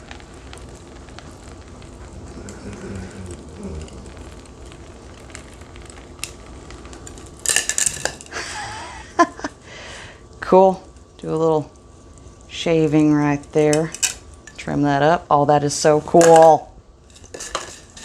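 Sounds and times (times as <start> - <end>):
faint crackling and clicks: 0.0 - 9.6, 10.3 - 15.2, 16.1 - 18.0.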